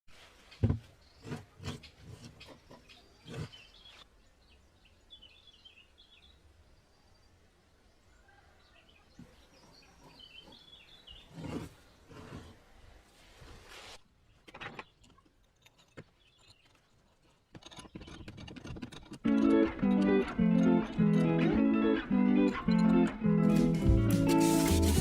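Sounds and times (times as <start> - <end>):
birds chirping faintly: 0.1 - 18.8
sharp knocks and thuds: 0.6 - 1.8.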